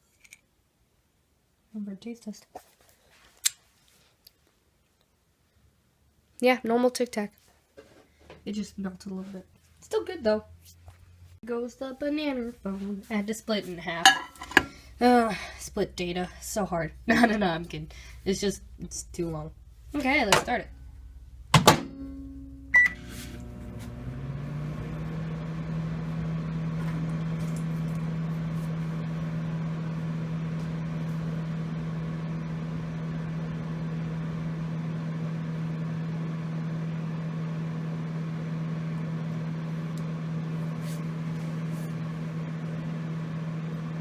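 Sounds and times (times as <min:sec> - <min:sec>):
microwave oven humming: 0:13.9 - 0:44.0
microwave beep: 0:21.8 - 0:23.2.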